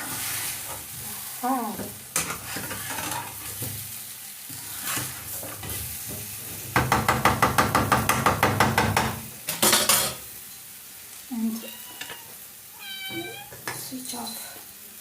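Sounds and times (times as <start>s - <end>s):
spoon scraping pan: 0.0s - 3.9s, 4.5s - 6.6s, 11.7s - 14.6s
potatoes and onions sizzling in pan: 0.0s - 15.0s.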